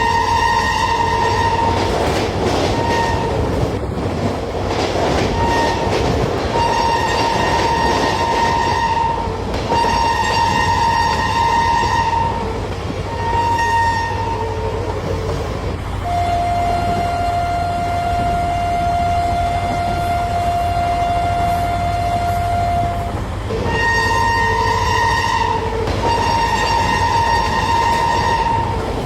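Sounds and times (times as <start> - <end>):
train horn blasts: 0.0 - 3.7, 5.3 - 29.0
moving train rumble: 0.0 - 29.0.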